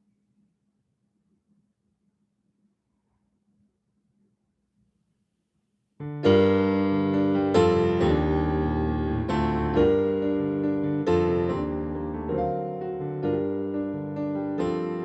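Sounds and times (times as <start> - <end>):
piano playing slow chords: 6.0 - 15.0.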